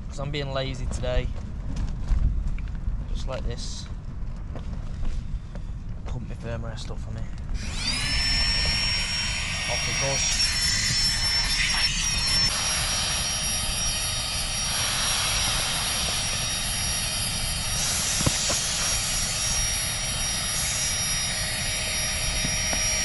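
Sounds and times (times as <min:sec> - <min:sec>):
wind rumbling on microphone: 0:00.0 - 0:23.0
air pump whining: 0:07.4 - 0:23.0.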